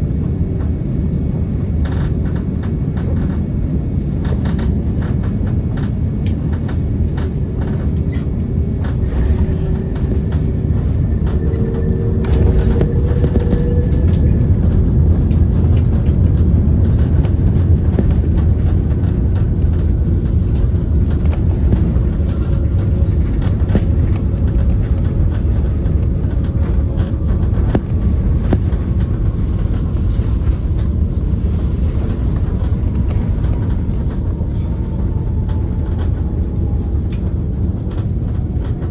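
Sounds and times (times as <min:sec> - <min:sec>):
jet engine rumble: 0:00.0 - 0:38.9.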